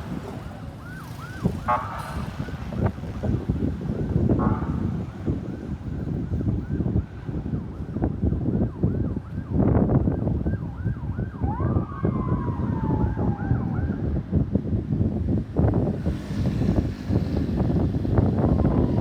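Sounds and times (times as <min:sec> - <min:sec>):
loud traffic rumble: 0:00.0 - 0:19.0
ambulance siren yelping: 0:00.2 - 0:03.1, 0:03.8 - 0:14.2
gliding downward siren tone: 0:10.4 - 0:14.0.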